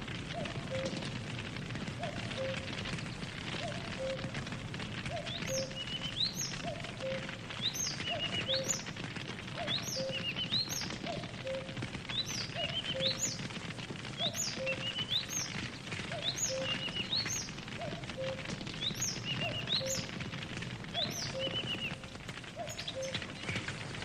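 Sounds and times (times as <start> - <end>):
campfire crackling and popping: 0.0 - 24.0
birds chirping rising calls: 5.1 - 8.9, 9.6 - 13.5, 14.2 - 20.2, 21.0 - 22.0, 22.6 - 23.7.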